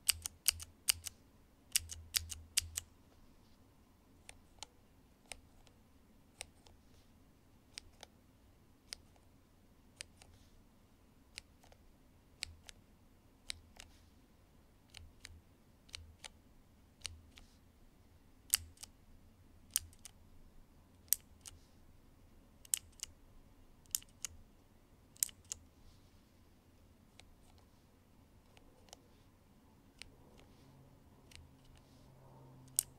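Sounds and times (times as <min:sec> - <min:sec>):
mechanical keyboard key clicks: 0:00.0 - 0:01.1, 0:01.7 - 0:02.9, 0:18.5 - 0:18.9, 0:22.6 - 0:23.1, 0:23.9 - 0:24.4, 0:25.2 - 0:25.6, 0:32.7 - 0:32.9.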